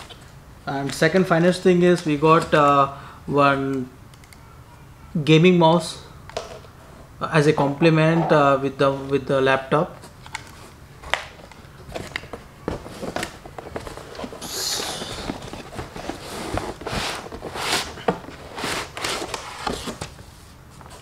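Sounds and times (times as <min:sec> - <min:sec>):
cardboard and plastic rustling: 0:10.0 - 0:21.0.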